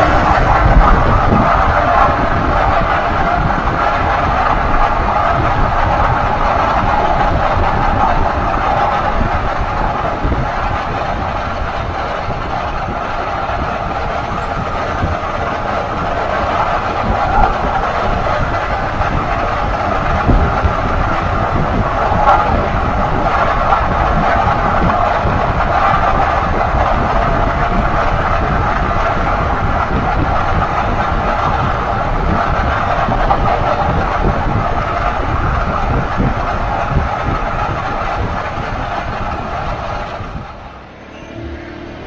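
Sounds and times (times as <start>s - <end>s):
mid-range drone: 0.0s - 27.4s
vehicle road and driveline noise: 0.0s - 42.0s.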